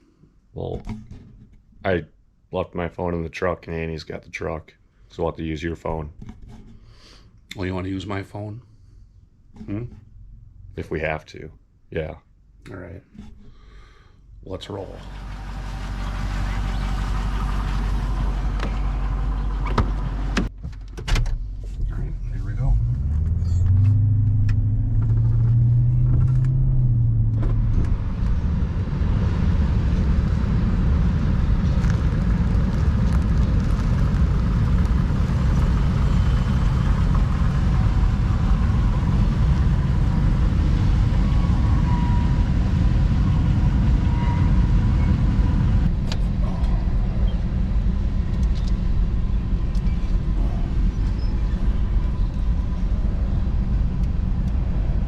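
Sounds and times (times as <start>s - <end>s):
vehicle engine rumble: 2.6s - 11.7s, 12.7s - 55.0s
road noise: 13.1s - 20.8s, 21.4s - 55.0s.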